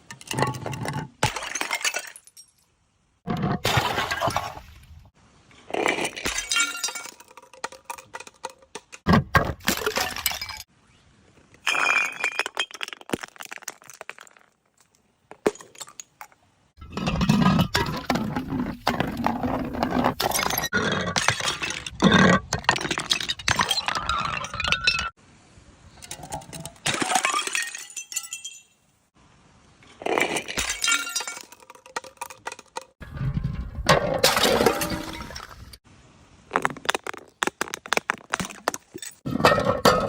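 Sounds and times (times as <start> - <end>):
glass bottles breaking: 1.2 - 2.6, 5.9 - 8.2, 9.5 - 10.7, 11.6 - 14.5, 22.7 - 25.2, 26.8 - 28.8, 30.2 - 32.6, 34.1 - 35.6.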